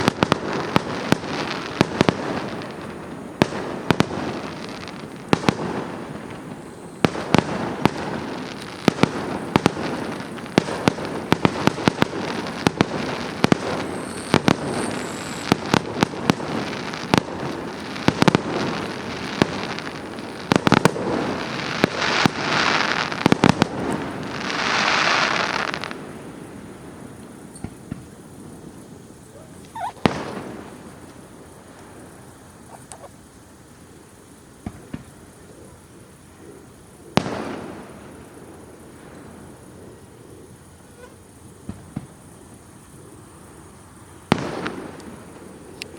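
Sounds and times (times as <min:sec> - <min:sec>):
firework shells bursting: 0:00.0 - 0:33.4
fireworks crackling: 0:00.0 - 0:45.9
fireworks hissing and crackling: 0:00.0 - 0:45.9.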